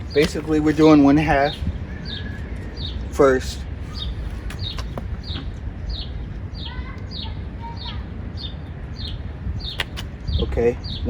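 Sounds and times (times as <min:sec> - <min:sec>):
bird chirping: 0:00.0 - 0:11.0
sharp click: 0:09.8 - 0:10.1.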